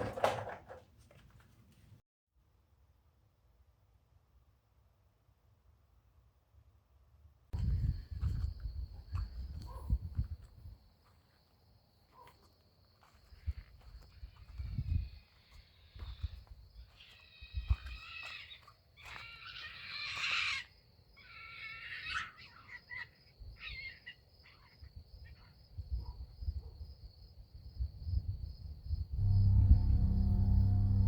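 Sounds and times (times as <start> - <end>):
wild animals screeching and yowling: 14.2 - 25.5.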